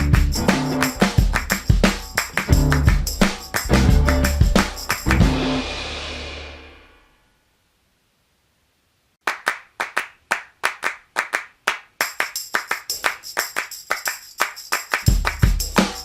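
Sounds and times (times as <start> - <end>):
sharp handclaps: 0.0 - 5.3, 9.2 - 16.0
jingling tambourine: 0.0 - 5.7, 12.0 - 16.0.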